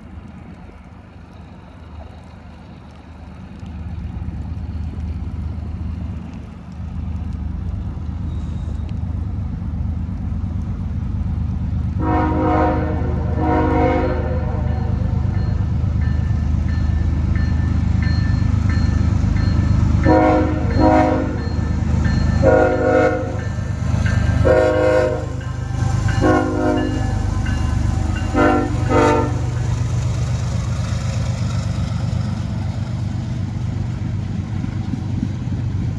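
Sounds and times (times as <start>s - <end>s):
diesel locomotives rumbling: 0.0s - 35.9s
locomotive horn short blasts: 12.0s - 15.1s, 20.0s - 21.6s, 22.3s - 23.5s, 24.4s - 29.6s.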